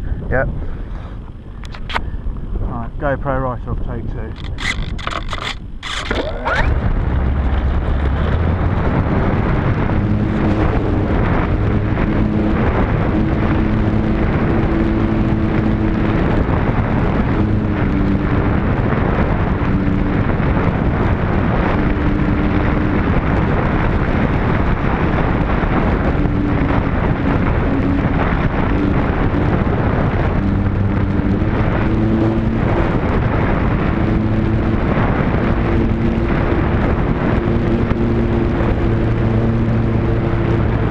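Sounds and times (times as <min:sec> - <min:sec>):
wind buffeting microphone: 0:00.0 - 0:40.9
model plane motor hum: 0:04.3 - 0:06.8.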